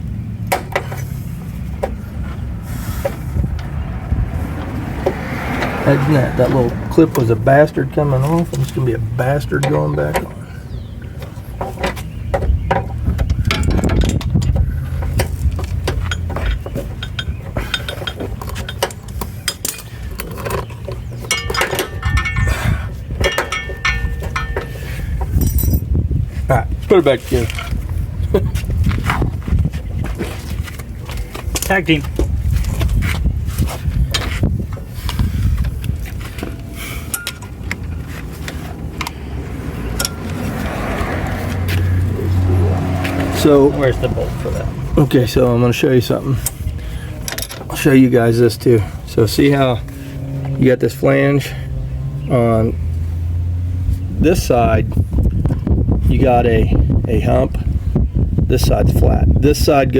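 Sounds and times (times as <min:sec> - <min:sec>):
metal tools clinking: 0:12.7 - 0:25.9, 0:36.2 - 0:39.2, 0:39.9 - 0:48.9.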